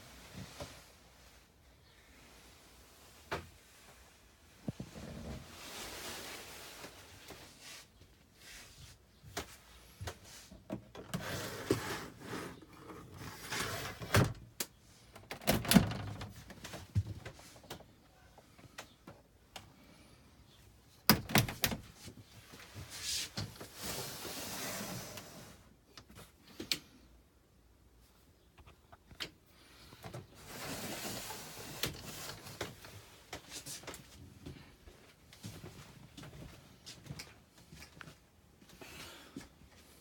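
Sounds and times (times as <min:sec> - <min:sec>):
soft shuffling: 0:21.9 - 0:24.6, 0:29.7 - 0:40.0.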